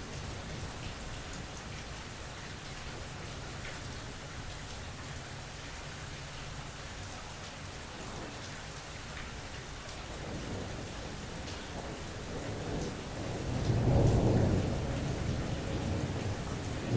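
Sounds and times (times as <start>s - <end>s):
steady rain falling: 0.0s - 16.9s
low thunder rumble: 10.2s - 16.9s.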